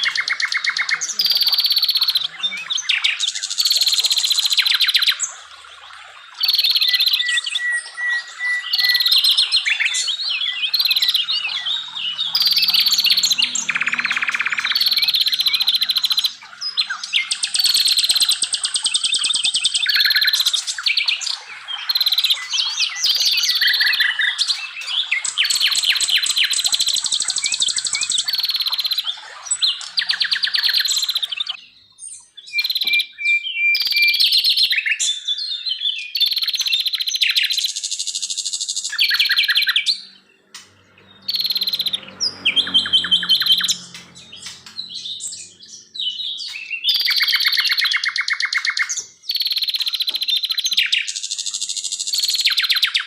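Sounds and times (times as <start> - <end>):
songbirds singing: 0.0 - 53.0.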